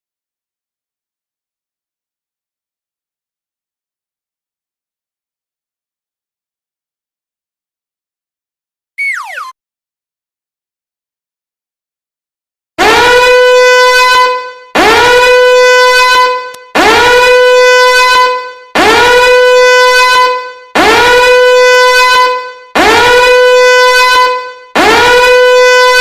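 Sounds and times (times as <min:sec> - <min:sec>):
alarm horn blasts: 0:12.8 - 0:26.0.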